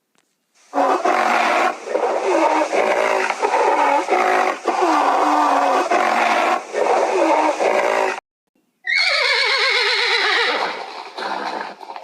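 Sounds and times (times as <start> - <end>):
long quavering animal call: 0.7 - 8.2.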